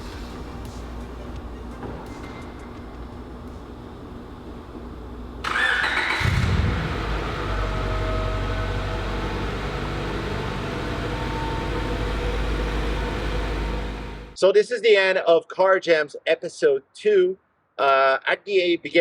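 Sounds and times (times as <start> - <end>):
car engine starting and idling: 1.6 - 14.4
starter motor cranking: 5.4 - 7.0.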